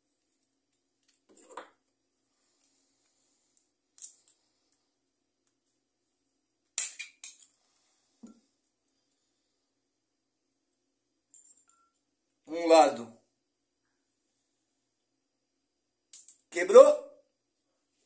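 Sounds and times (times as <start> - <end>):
light metallic clicks and clinks: 3.9 - 4.4, 11.3 - 12.0.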